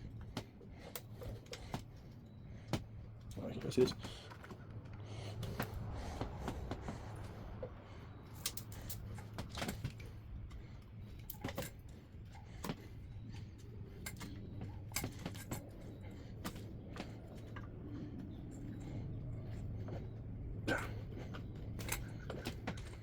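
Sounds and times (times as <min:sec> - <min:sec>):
steady low hum: 0:00.0 - 0:23.0
hand tools clicking and tapping: 0:08.3 - 0:10.1, 0:11.2 - 0:17.8.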